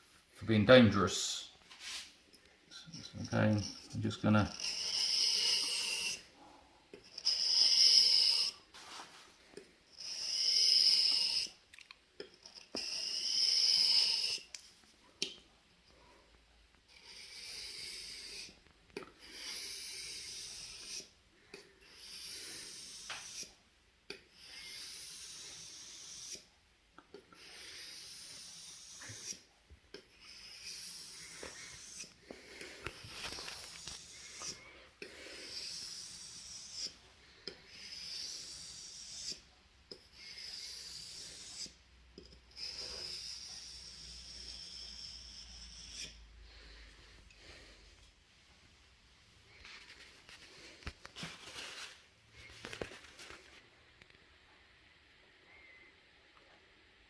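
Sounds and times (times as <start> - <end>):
knife scraping on sharpening stone: 42.6 - 46.2.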